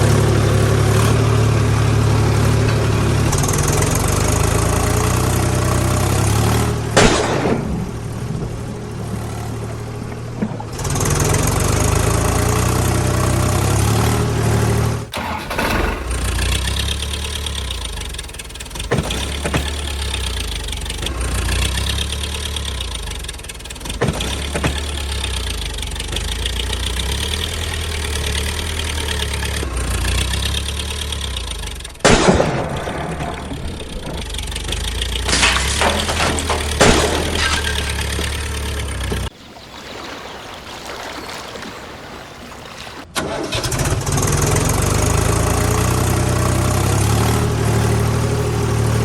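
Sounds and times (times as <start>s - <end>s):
engine idling: 0.0s - 39.3s, 43.1s - 49.0s.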